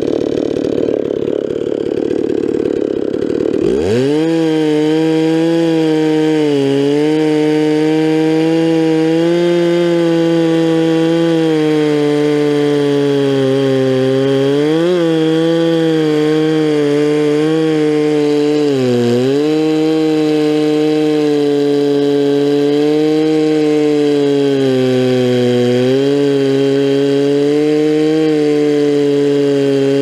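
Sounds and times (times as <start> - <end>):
chainsaw cutting through log: 0.0 - 30.0.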